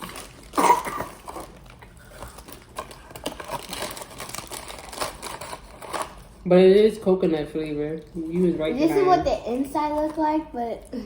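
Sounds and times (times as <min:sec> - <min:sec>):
plastic packaging crinkling: 0:00.0 - 0:06.4.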